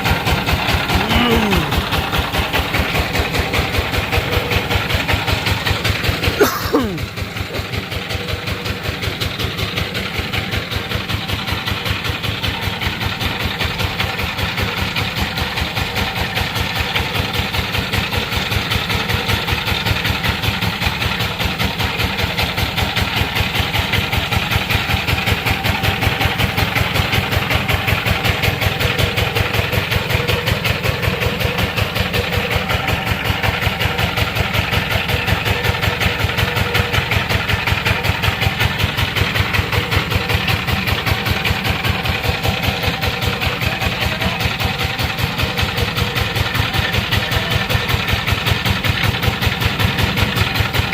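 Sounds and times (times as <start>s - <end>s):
diesel engine chugging: 0.0s - 50.9s.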